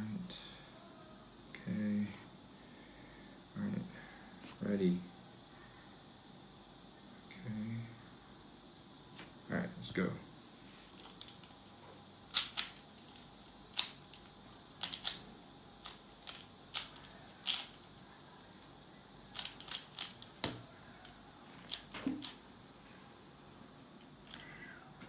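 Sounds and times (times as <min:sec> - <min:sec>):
puzzle cube layers clicking: 0:13.8 - 0:15.2.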